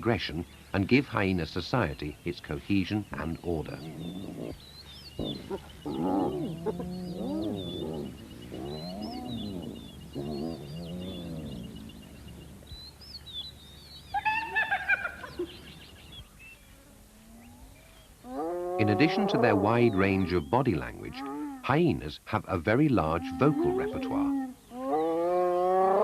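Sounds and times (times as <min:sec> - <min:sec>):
faint bird chirps: 0:01.8 - 0:22.0
hyenas calling: 0:02.6 - 0:15.6, 0:17.0 - 0:22.0, 0:23.0 - 0:26.0.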